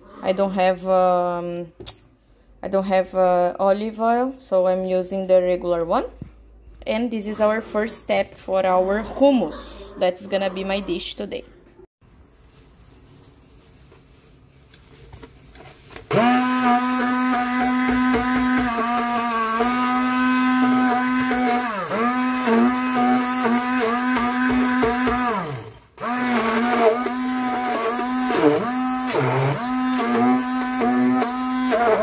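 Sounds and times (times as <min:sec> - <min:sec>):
blender motor grinding: 0:16.1 - 0:32.0.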